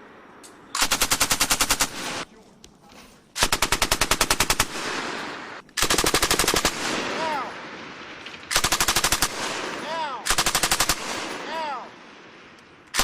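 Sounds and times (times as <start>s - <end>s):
machine gun firing bursts: 0.8s - 2.2s, 3.4s - 7.6s, 8.5s - 11.9s
gunfire echo: 3.4s - 13.0s.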